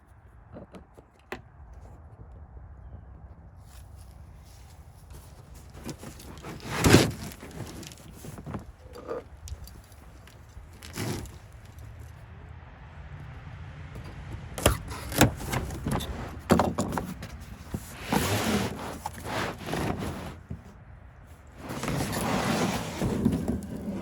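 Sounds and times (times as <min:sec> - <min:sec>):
floor liner scraping and rustling: 0:03.7 - 0:12.1, 0:14.8 - 0:20.8, 0:21.4 - 0:24.0.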